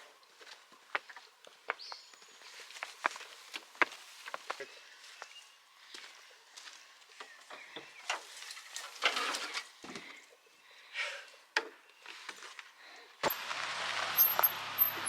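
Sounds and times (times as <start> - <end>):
steady noise with low hum: 12.6 - 15.0.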